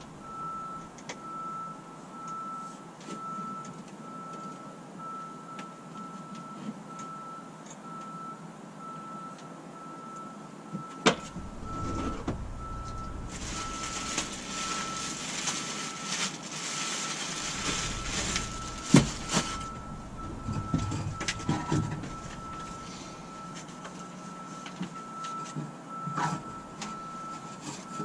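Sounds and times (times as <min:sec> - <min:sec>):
thumps: 0:11.2 - 0:15.0, 0:17.5 - 0:23.6
high electronic beep: 0:11.2 - 0:15.1, 0:17.5 - 0:24.4
hissing noise: 0:11.3 - 0:15.9.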